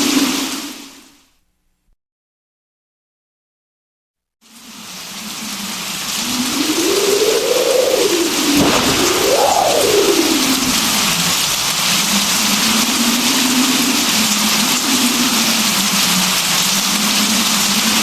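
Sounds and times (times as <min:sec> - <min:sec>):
steady rain falling: 0:04.4 - 0:18.0.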